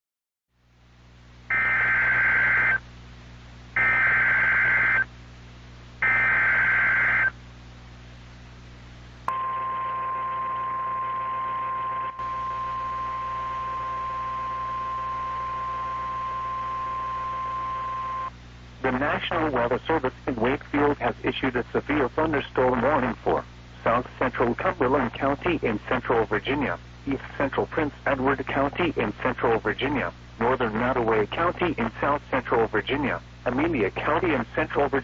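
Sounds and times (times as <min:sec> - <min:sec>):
steady warning alarm tone: 0:01.5 - 0:02.8, 0:03.8 - 0:05.0, 0:06.0 - 0:07.3, 0:09.3 - 0:18.3
warbling data tones: 0:01.5 - 0:02.8, 0:03.8 - 0:05.0, 0:06.0 - 0:07.3.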